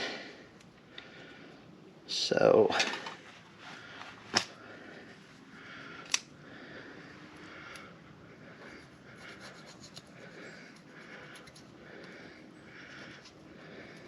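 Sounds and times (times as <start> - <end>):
sharp clicks: 6.0 - 6.3.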